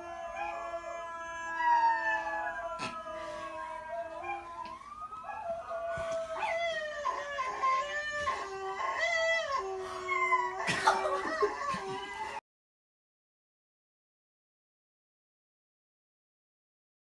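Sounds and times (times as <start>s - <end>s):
puppies howling: 0.0s - 12.4s.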